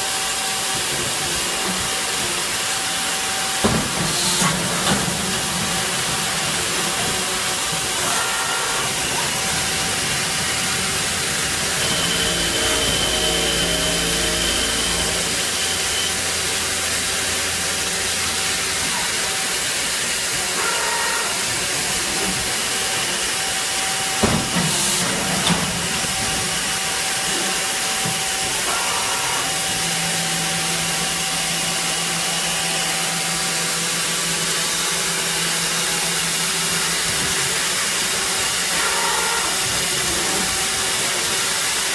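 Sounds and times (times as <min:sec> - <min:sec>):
cnc machine hissing: 0:00.0 - 0:41.9
motor whines changing pitch: 0:05.9 - 0:19.4.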